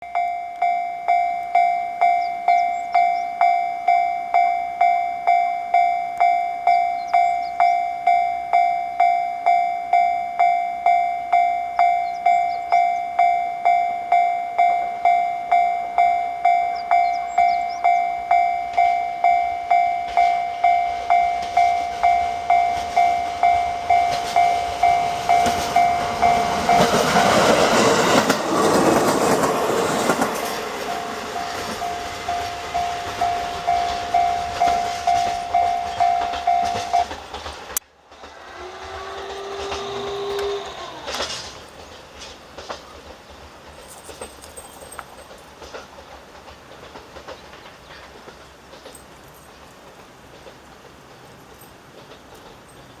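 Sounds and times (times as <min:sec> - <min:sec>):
level-crossing two-tone bell: 0:00.0 - 0:37.4
electric train passing: 0:00.0 - 0:53.0.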